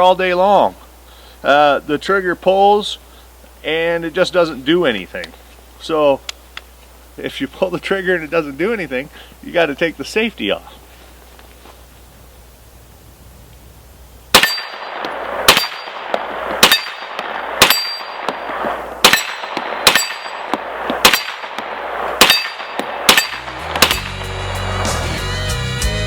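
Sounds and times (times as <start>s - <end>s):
gunshots with ringing tail: 14.3s - 24.5s.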